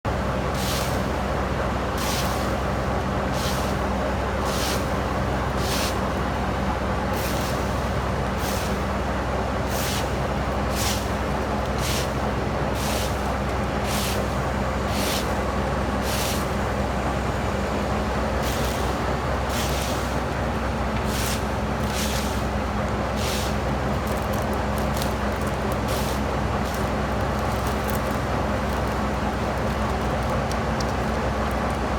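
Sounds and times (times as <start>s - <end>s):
heavy truck engine running: 0.1s - 31.9s.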